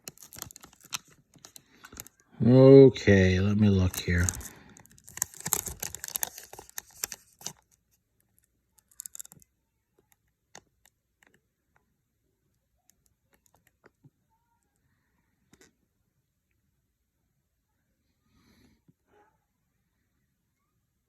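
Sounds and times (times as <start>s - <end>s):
trading cards clicking and rustling: 0.0s - 2.2s, 3.8s - 7.8s.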